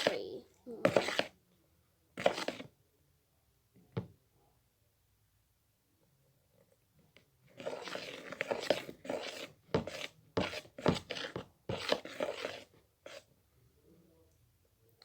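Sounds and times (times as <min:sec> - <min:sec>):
slime being stirred with a spoon: 0:00.8 - 0:01.4, 0:02.2 - 0:02.7, 0:07.5 - 0:13.3.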